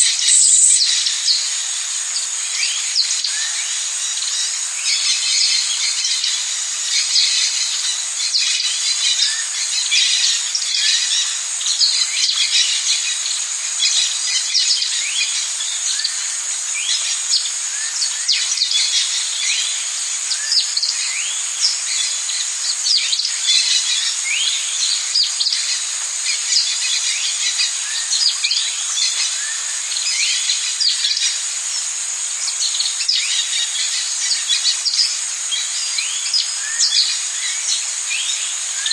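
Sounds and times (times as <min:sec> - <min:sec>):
bird chirps: 0:00.0 - 0:01.5
high-pitched insect drone: 0:00.0 - 0:38.9.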